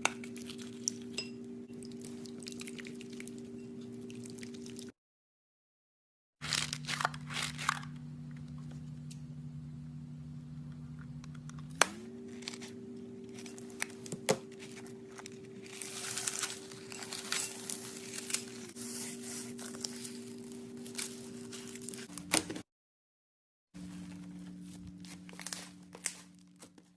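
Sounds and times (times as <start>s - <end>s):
stress ball crackling and tearing: 6.4s - 8.0s
low hum: 6.5s - 22.3s.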